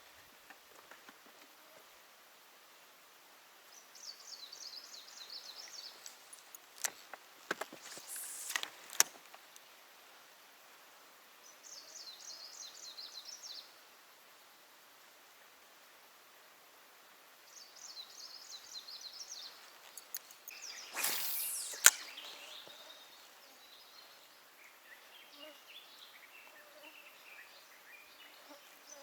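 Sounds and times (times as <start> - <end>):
line hissing off reel: 5.7 - 9.3, 19.7 - 23.3
reel click: 6.0 - 9.2, 19.8 - 22.9
fishing rod swish: 20.2 - 23.0.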